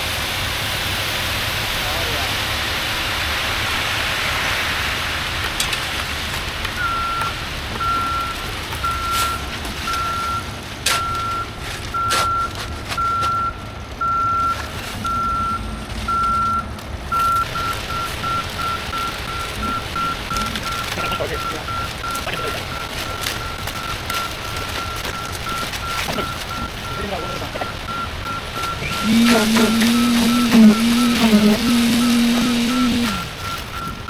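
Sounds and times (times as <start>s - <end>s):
diesel engine running: 0.0s - 34.0s
reversing alarm beeps: 6.8s - 34.0s.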